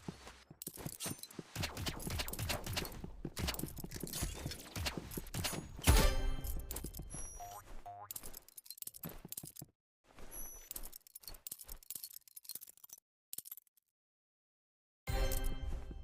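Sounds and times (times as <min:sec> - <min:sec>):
butterfly knife clicking and rattling: 0:10.8 - 0:13.8
music: 0:15.1 - 0:16.0.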